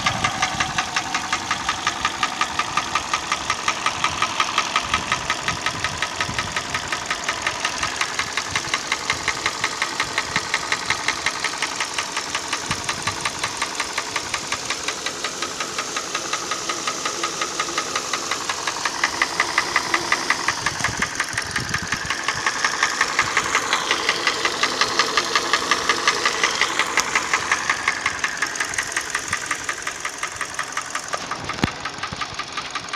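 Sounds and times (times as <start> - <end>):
engine running: 0.0 - 32.9
rhythmic engine knock: 0.0 - 32.9.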